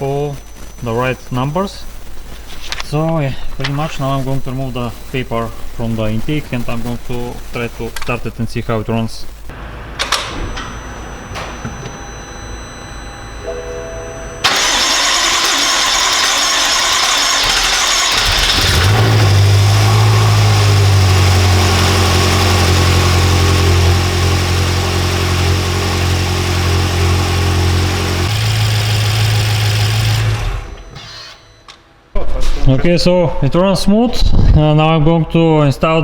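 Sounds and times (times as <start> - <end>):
car engine starting and idling: 9.5 - 11.6, 14.2 - 31.6.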